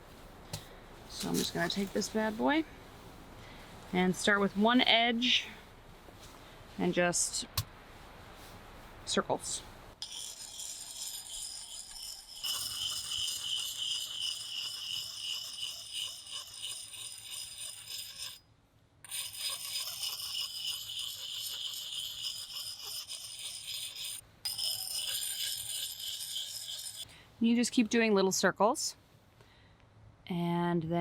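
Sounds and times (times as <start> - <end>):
sharpening stone scraping steel: 10.0 - 18.4, 19.1 - 27.1.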